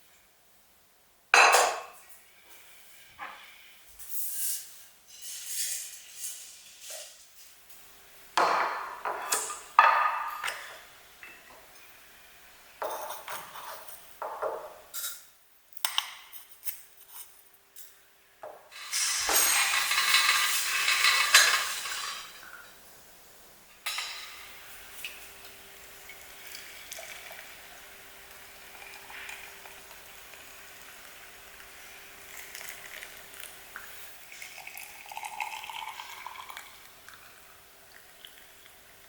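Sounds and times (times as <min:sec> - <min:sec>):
dishes and utensils clattering: 0:01.4 - 0:02.0, 0:12.8 - 0:15.3, 0:18.7 - 0:22.6, 0:23.8 - 0:24.6.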